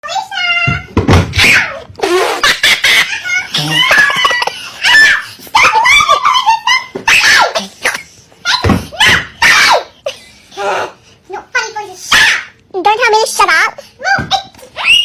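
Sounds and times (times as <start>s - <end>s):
person laughing hard: 2.1s - 4.8s.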